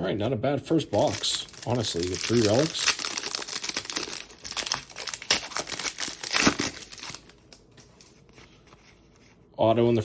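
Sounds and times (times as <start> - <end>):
plastic wrapping crinkling and tearing: 0.9 - 8.2.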